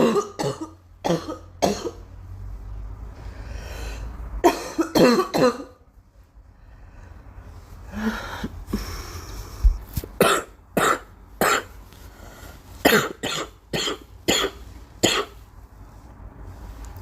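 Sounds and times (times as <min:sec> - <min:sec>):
girl coughing: 0:00.0 - 0:02.0, 0:04.4 - 0:05.8, 0:10.2 - 0:11.7, 0:12.8 - 0:15.4.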